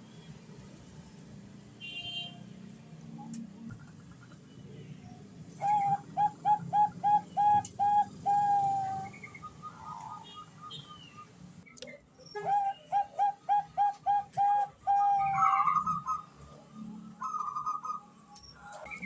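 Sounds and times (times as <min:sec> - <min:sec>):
dove cooing: 0:05.6 - 0:10.4, 0:12.4 - 0:16.3.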